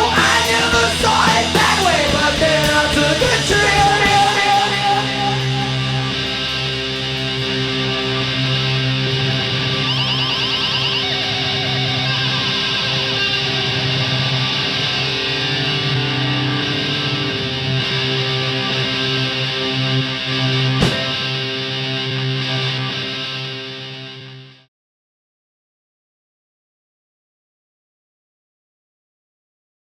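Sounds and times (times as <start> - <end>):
bass guitar: 0.0 - 24.7
distorted electric guitar: 0.0 - 24.7.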